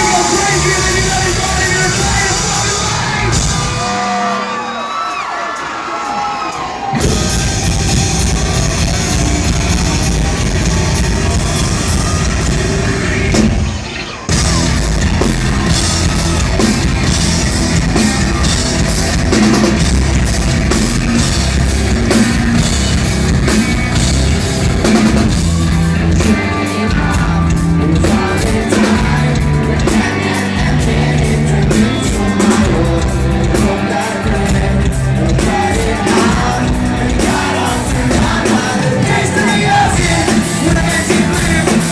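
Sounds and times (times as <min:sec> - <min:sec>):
distorted electric guitars: 0:00.0 - 0:05.2, 0:06.6 - 0:41.9
pounding drums: 0:00.0 - 0:41.9
rock band playing live: 0:00.0 - 0:41.9
person singing: 0:24.8 - 0:41.9.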